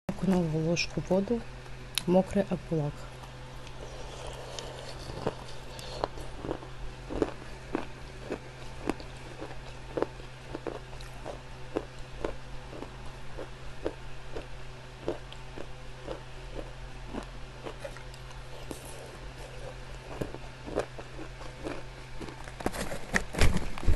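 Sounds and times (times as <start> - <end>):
steady low hum: 0.1 - 23.9.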